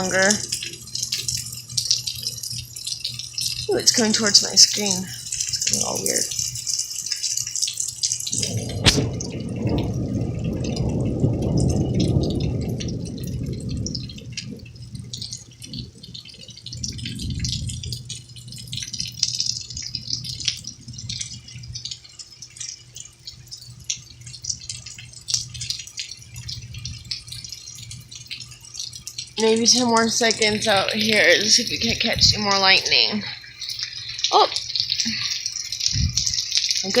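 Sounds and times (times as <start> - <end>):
rain dripping and pattering: 0.0 - 37.0
low rumble of thunder: 8.1 - 22.0, 23.7 - 35.0, 35.6 - 37.0.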